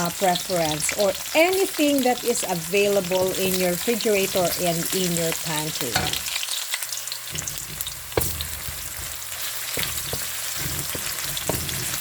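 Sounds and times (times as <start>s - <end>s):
vegetables sizzling in oil: 0.0s - 12.0s.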